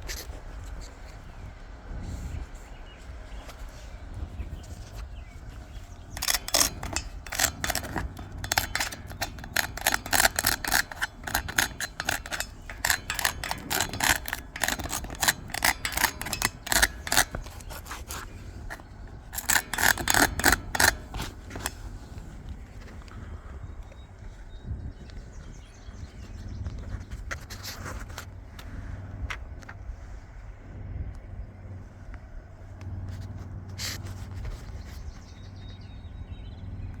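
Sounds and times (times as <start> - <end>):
rapid scraping strokes: 6.2 - 22.1.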